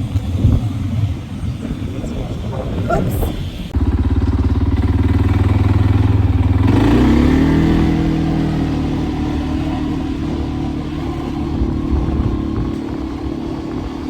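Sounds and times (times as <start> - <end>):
quad engine running and revving: 3.8 - 14.0.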